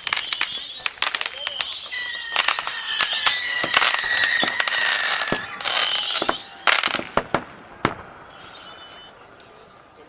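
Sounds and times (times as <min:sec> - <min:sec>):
high whistle: 0:00.0 - 0:07.0, 0:08.2 - 0:09.3
fireworks popping and crackling: 0:00.0 - 0:09.4.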